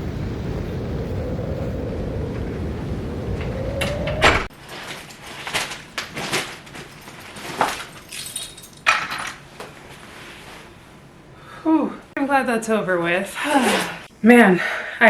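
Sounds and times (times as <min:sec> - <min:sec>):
car driving: 0:00.0 - 0:04.5
keys clinking: 0:06.7 - 0:09.4.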